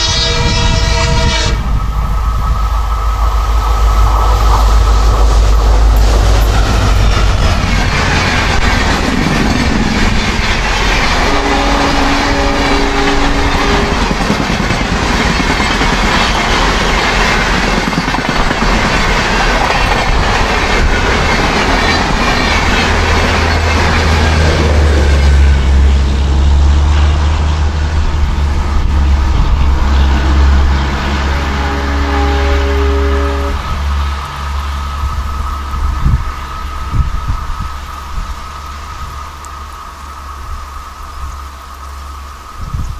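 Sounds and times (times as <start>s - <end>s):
train wheels clattering on rails: 2.3s - 27.6s.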